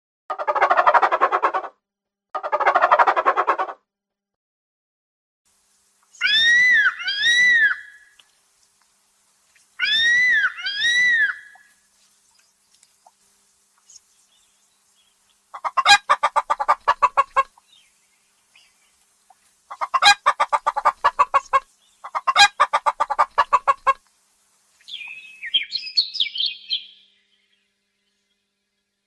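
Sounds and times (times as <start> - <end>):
chicken clucking rapidly: 0.3 - 1.7, 2.4 - 3.8, 15.5 - 17.6, 19.3 - 24.0
higher chirping call: 24.8 - 27.2.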